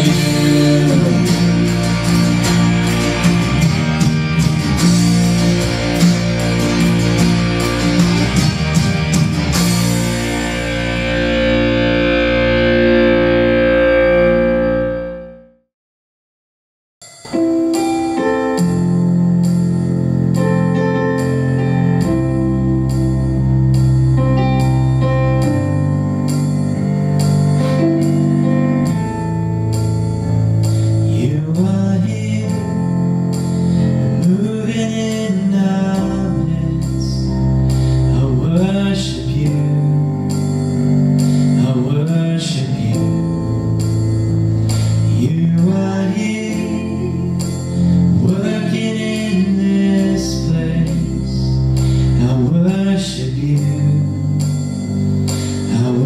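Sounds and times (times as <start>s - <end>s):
person singing: 0.0s - 4.0s, 31.1s - 40.3s, 41.5s - 43.5s, 45.1s - 54.4s, 55.4s - 56.0s
band playing worship song: 0.0s - 14.5s, 17.3s - 56.0s.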